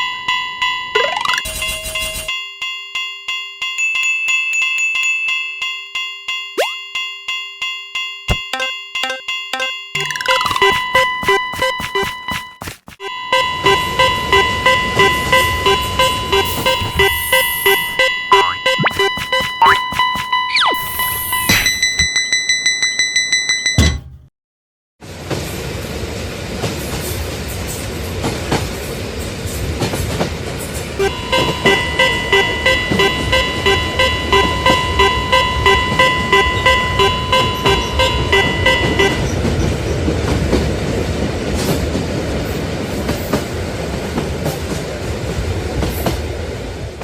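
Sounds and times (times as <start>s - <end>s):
level crossing warning bell: 0.0s - 24.0s, 31.0s - 40.0s
train rumbling on rails: 25.1s - 47.0s.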